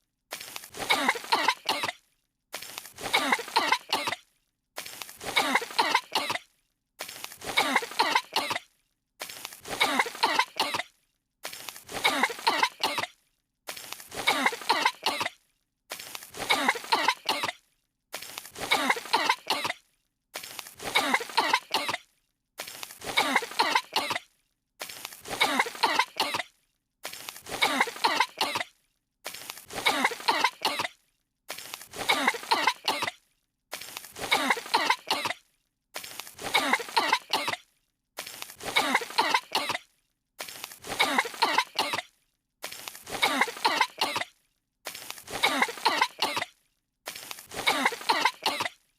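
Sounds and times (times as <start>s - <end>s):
cartoon characters coughing: 0.8s - 2.0s, 3.0s - 4.3s, 5.2s - 6.5s, 7.4s - 8.7s, 9.6s - 10.9s, 11.9s - 13.2s, 14.1s - 15.4s, 16.4s - 17.6s, 18.6s - 19.8s, 20.8s - 22.0s, 23.0s - 24.3s, 25.2s - 26.5s, 27.5s - 28.7s, 29.7s - 31.0s, 31.9s - 33.2s, 34.2s - 35.4s, 36.4s - 37.6s, 38.6s - 39.8s, 40.8s - 42.1s, 43.1s - 44.3s, 45.3s - 46.5s, 47.5s - 48.8s.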